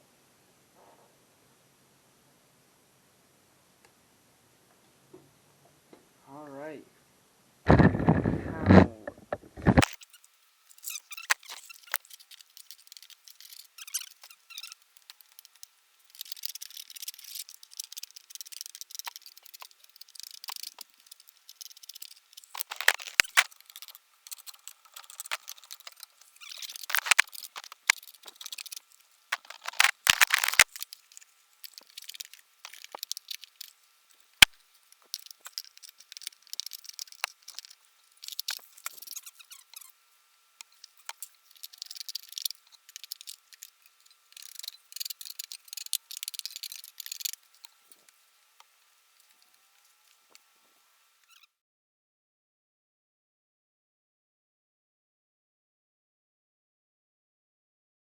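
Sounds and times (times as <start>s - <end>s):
scratchy scraping: 7.7s - 10.0s, 10.8s - 40.0s.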